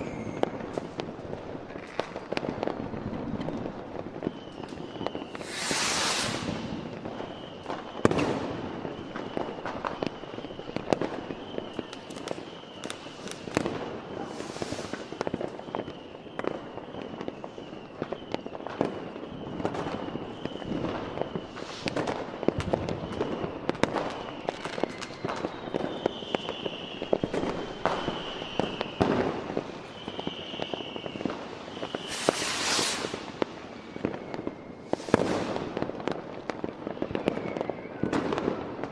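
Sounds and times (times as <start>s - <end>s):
fireworks bangs and cracks: 0.0s - 38.9s
hissing crackling firework bursts: 0.0s - 38.9s.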